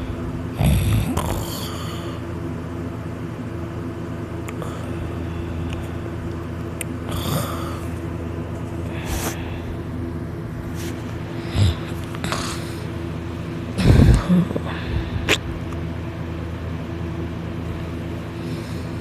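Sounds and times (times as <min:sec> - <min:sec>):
person snoring: 0:00.0 - 0:02.2, 0:07.0 - 0:08.0, 0:08.9 - 0:09.8, 0:11.3 - 0:12.9, 0:13.7 - 0:15.4
steady low hum: 0:00.0 - 0:19.0.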